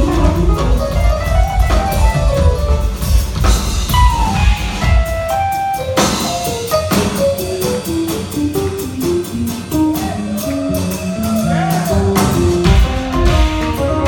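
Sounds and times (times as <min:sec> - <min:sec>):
bass: 0:00.0 - 0:14.0
drum kit: 0:00.0 - 0:14.0
fast melodic line: 0:00.0 - 0:14.0
jazz-rock band playing: 0:00.0 - 0:14.0.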